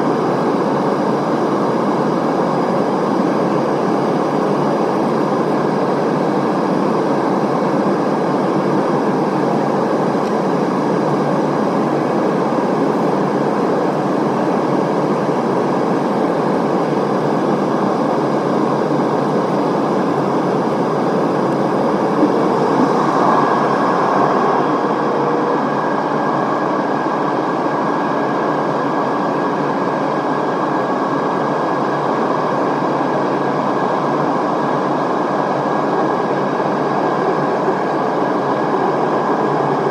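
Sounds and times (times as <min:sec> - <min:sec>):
aircraft cabin air rush: 0:00.0 - 0:27.2
jet engine drone: 0:00.0 - 0:39.9.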